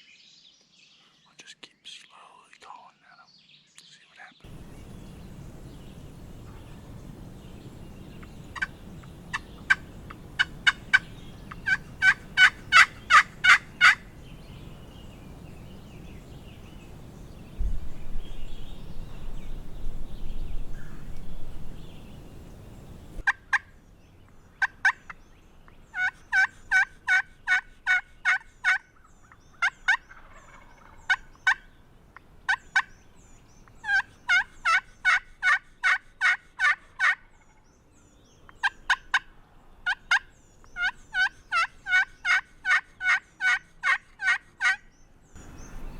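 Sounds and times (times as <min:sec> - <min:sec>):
loud low rushing noise: 0:04.5 - 0:23.2
wild turkey yelping: 0:08.0 - 0:14.1, 0:25.9 - 0:31.7, 0:33.8 - 0:37.5, 0:38.6 - 0:44.8.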